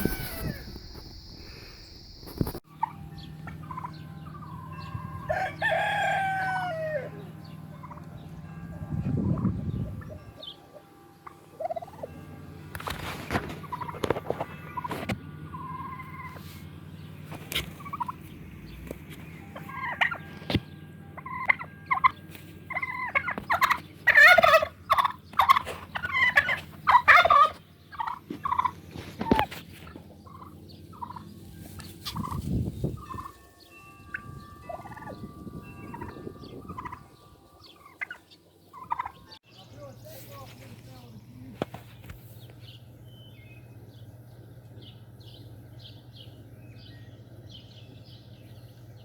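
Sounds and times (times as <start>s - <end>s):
rooster squawking: 0.0s - 0.8s
rooster clucking: 0.0s - 0.9s, 21.2s - 31.4s
steady low hum: 7.0s - 49.0s.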